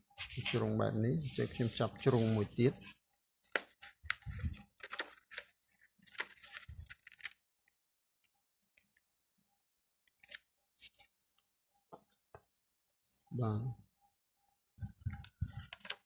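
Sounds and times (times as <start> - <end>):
paper being folded: 0.1 - 7.4.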